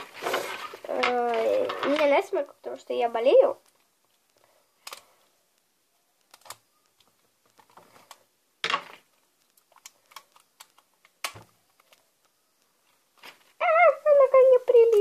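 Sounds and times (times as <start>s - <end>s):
plastic packaging rustling: 0.0s - 2.4s.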